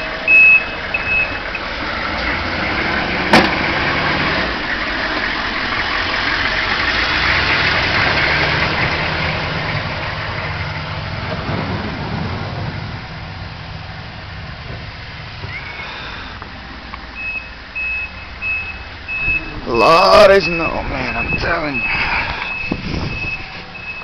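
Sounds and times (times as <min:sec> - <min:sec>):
reversing beeper: 0:00.0 - 0:01.8, 0:17.2 - 0:24.0
snowplow truck engine running: 0:00.0 - 0:24.0.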